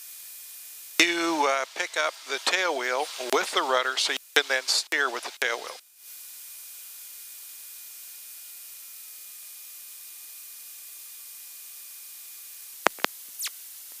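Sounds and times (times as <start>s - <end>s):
electronic static hiss: 0.8s - 5.8s, 12.6s - 14.0s
sharp clicks: 12.9s - 13.5s.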